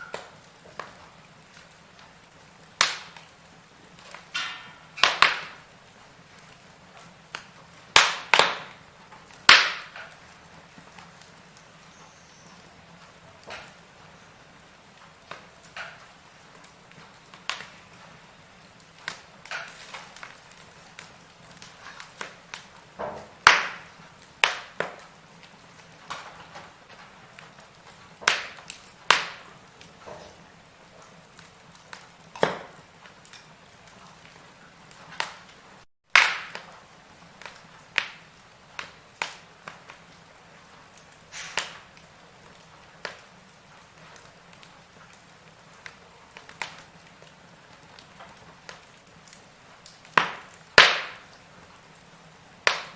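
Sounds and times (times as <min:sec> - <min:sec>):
faint steady hiss: 0:00.0 - 0:52.9
wood fire crackling: 0:00.0 - 0:52.9
sharp pops: 0:02.8 - 0:03.3, 0:04.0 - 0:05.6, 0:07.4 - 0:08.8, 0:09.4 - 0:10.2, 0:19.0 - 0:25.1, 0:28.2 - 0:30.3, 0:31.9 - 0:33.5, 0:36.1 - 0:36.7, 0:41.3 - 0:41.9, 0:50.1 - 0:51.3.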